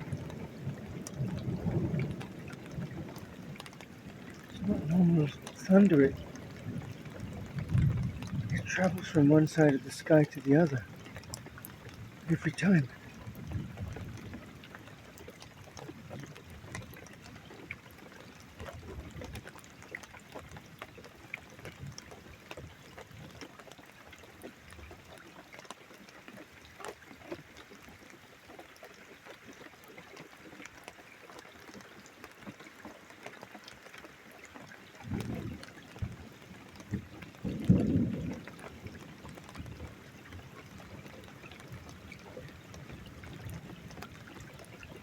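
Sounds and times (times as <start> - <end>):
distant thunder rumbling: 0.0 - 11.1, 36.9 - 40.0
rain pouring: 0.0 - 45.0
water drips ticking: 0.0 - 45.0.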